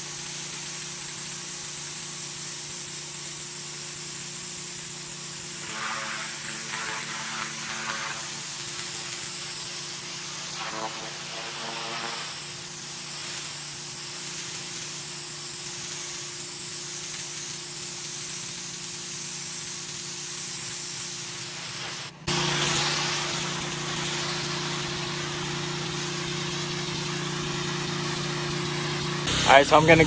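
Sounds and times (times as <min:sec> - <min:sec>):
pressure washer spraying concrete: 0:00.0 - 0:30.0
machine hum: 0:22.2 - 0:30.0.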